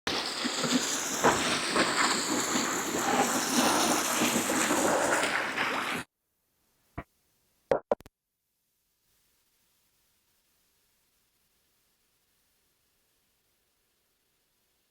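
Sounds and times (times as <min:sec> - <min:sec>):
rushing water: 0:00.1 - 0:06.0.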